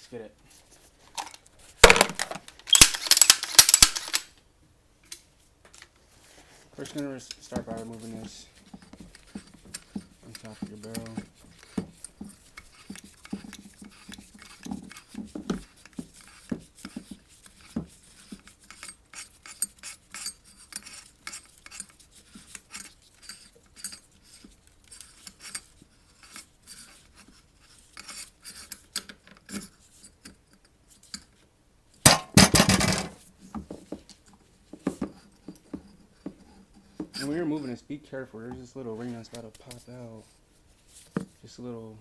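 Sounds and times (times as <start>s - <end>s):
metallic clicks and scrapes of gun parts: 0.8s - 4.4s, 6.7s - 33.3s
metal rattling and scraping: 1.2s - 4.3s, 32.1s - 33.2s.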